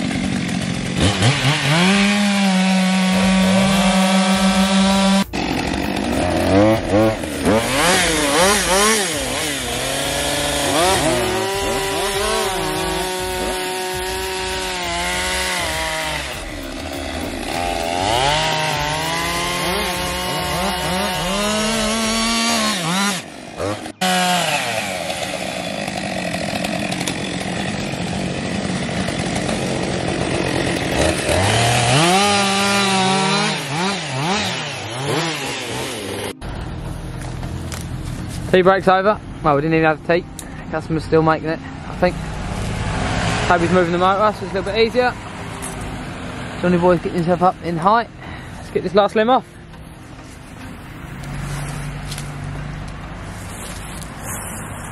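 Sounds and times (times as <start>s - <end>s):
chainsaw cutting wood: 0.0s - 36.4s, 50.6s - 54.9s.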